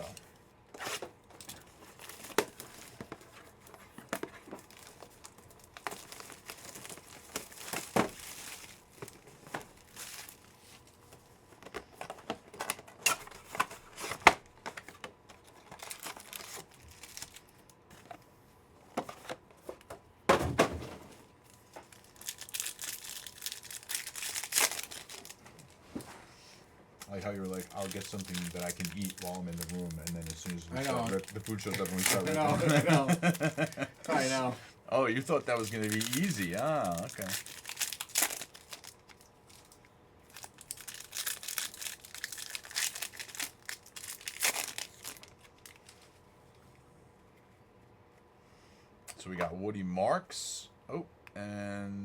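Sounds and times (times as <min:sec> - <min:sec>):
foil packs tearing and crinkling: 0:00.8 - 0:10.9, 0:11.8 - 0:17.7, 0:21.6 - 0:25.8, 0:27.0 - 0:34.5, 0:35.2 - 0:46.0.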